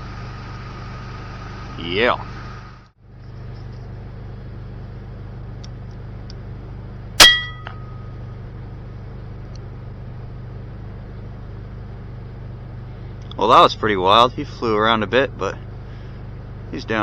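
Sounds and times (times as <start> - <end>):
brief metallic ring: 7.2 - 8.2.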